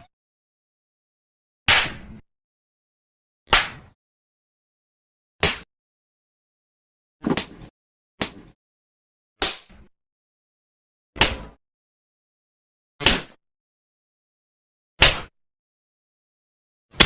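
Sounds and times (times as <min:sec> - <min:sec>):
open-hand slaps to the face: 0:01.7 - 0:02.1, 0:03.5 - 0:04.0, 0:05.4 - 0:05.7, 0:07.2 - 0:08.6, 0:09.4 - 0:09.9.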